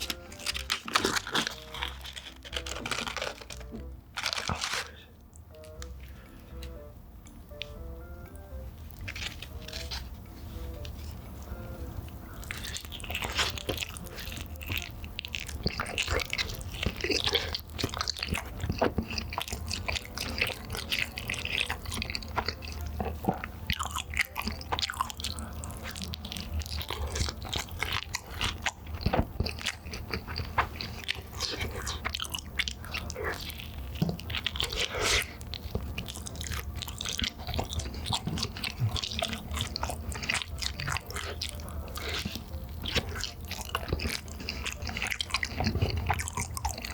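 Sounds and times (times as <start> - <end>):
person chewing crunchy pizza: 0.0 - 6.8, 7.5 - 46.9
wet mouth noises: 12.2 - 46.9.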